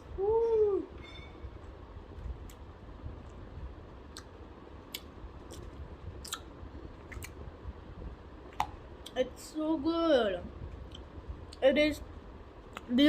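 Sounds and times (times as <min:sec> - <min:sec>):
low steady hum: 0:00.0 - 0:13.0
wet gum chewing clicks: 0:04.9 - 0:07.4.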